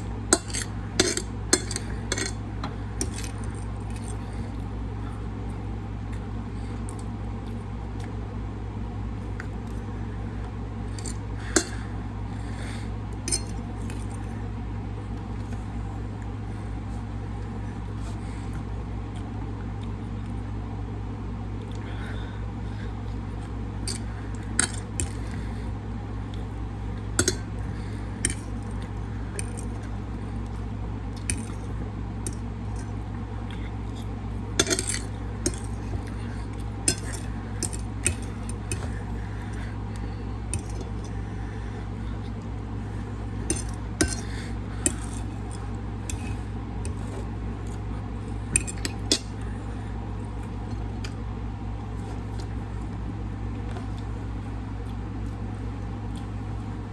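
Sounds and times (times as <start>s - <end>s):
steady low hum: 0.0s - 56.9s
cutlery clinking on a plate: 0.4s - 2.4s, 13.3s - 14.1s, 24.6s - 25.4s, 27.2s - 27.5s, 34.6s - 36.1s, 36.9s - 39.0s, 40.5s - 41.0s, 43.5s - 45.3s, 46.1s - 47.2s, 48.5s - 49.4s.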